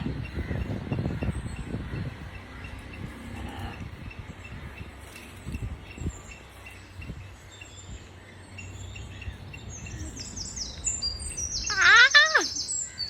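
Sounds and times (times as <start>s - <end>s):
harsh parrot call: 11.6s - 13.0s.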